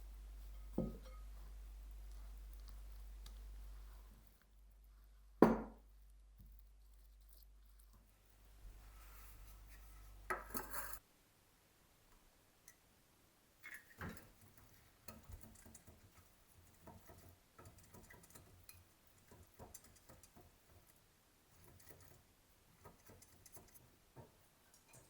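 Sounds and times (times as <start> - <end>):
knock: 0.8 - 1.0, 5.4 - 5.8.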